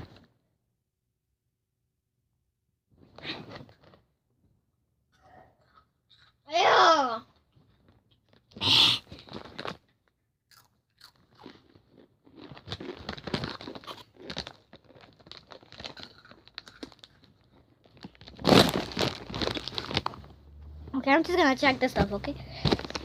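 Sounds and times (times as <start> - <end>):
chips crunching and chewing: 5.6 - 6.4, 8.1 - 20.3, 22.5 - 23.0.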